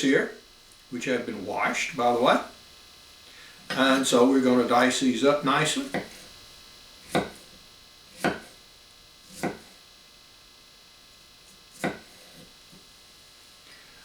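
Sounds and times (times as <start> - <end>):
knife striking cutting board: 5.8 - 6.2, 7.1 - 7.5, 8.2 - 8.6, 9.3 - 9.7, 11.8 - 12.2.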